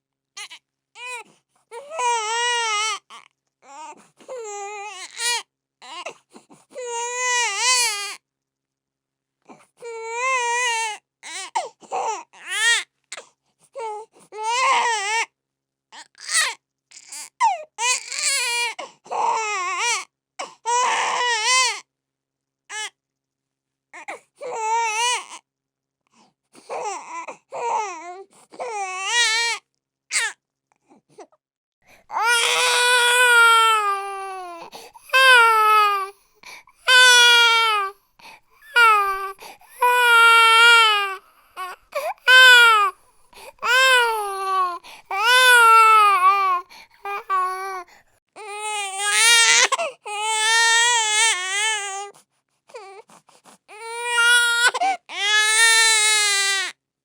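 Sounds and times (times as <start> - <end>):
baby crying: 0.4 - 3.1, 6.8 - 8.2, 14.4 - 15.2, 16.2 - 20.0, 20.7 - 21.8, 32.0 - 52.1, 53.7 - 56.7.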